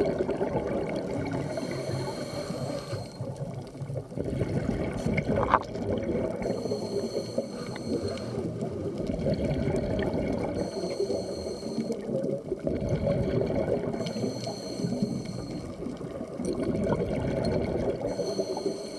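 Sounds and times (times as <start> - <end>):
exhaled bubbles rushing: 0.0 - 2.2, 3.1 - 6.9, 7.6 - 10.8, 11.9 - 14.2, 14.8 - 18.2
muffled underwater noise: 0.0 - 18.9
regulator hissing inhale: 1.2 - 3.4, 6.4 - 8.7, 10.6 - 12.2, 13.9 - 15.8, 18.0 - 18.9.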